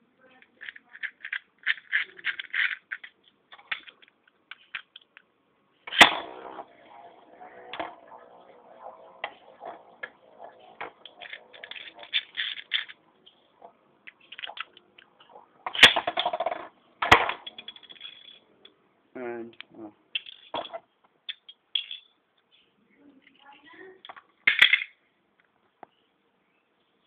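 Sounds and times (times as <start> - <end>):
loud launcher crack: 5.9 - 6.8
spinning tops whirring: 5.9 - 18.4.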